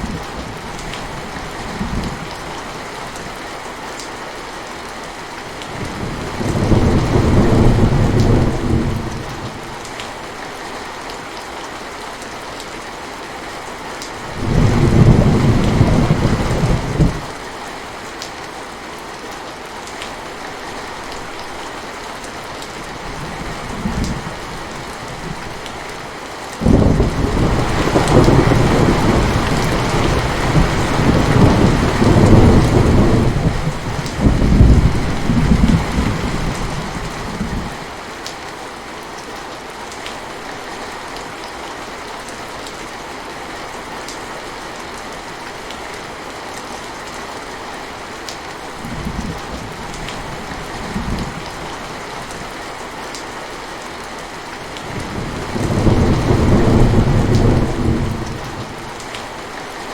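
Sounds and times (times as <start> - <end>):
heavy rain hissing: 20.2 - 38.0, 54.2 - 59.9
thunder rolling: 26.6 - 37.7, 55.0 - 58.8.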